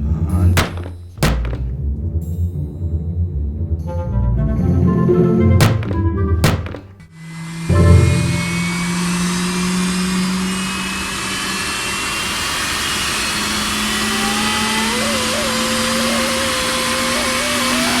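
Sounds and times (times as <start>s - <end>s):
vacuum cleaner running: 5.7s - 18.0s
wavering whine: 7.3s - 11.2s, 12.2s - 18.0s.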